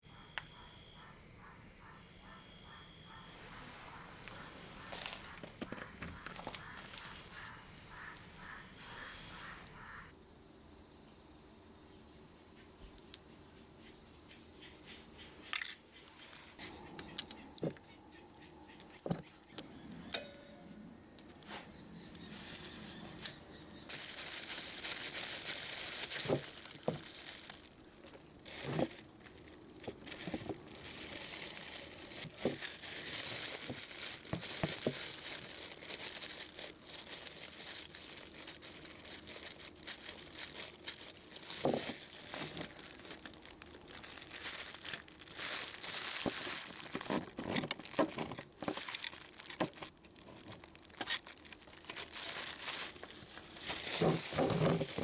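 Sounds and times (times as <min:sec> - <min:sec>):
crinkling and rustling handling: 0:14.3 - 0:55.0.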